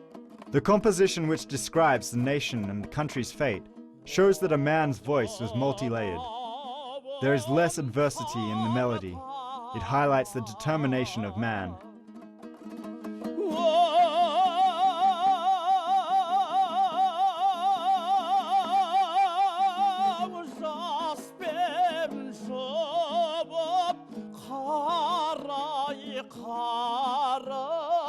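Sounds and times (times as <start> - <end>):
instrumental accompaniment: 0.0 - 6.2, 9.9 - 15.5
person singing with vibrato: 4.1 - 11.9, 13.3 - 28.0.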